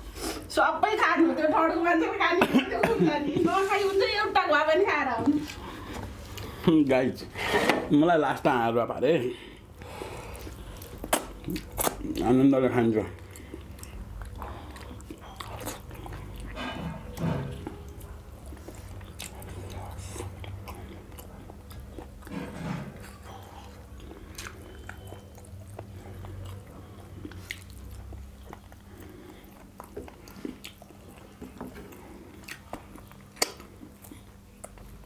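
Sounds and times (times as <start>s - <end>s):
close-up chewing and biting: 9.8s - 35.0s.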